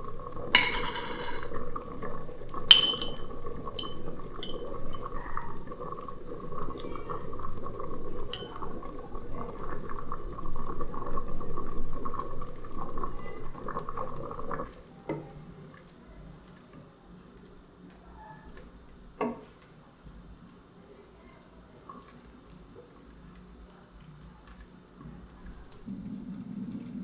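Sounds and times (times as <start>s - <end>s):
food bubbling and crackling: 0.0s - 17.8s, 21.6s - 27.0s
utensil clinking against pot: 0.4s - 8.9s.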